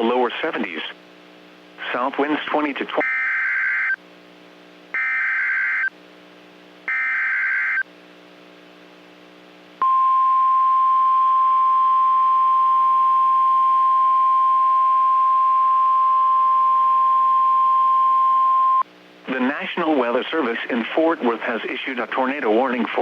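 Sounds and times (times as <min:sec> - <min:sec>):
steady warning alarm tone: 0:03.0 - 0:04.0, 0:05.0 - 0:05.9, 0:06.9 - 0:07.8.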